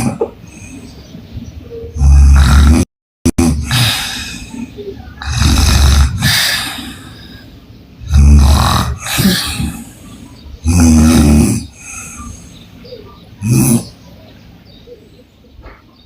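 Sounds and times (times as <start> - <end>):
woman snoring loudly: 2.0 - 2.9, 5.2 - 7.2, 8.1 - 9.9, 10.7 - 11.8.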